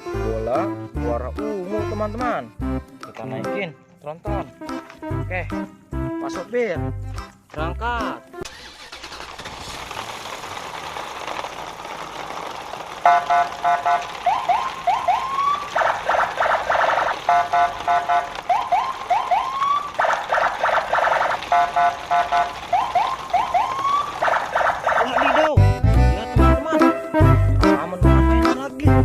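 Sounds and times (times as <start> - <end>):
car alarm beeps and whoops: 13.1 - 25.6.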